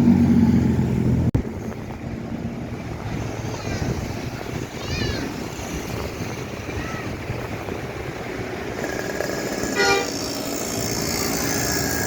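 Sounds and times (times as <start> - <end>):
road traffic rumble: 0.0 - 12.0
car horn toot: 9.7 - 10.2.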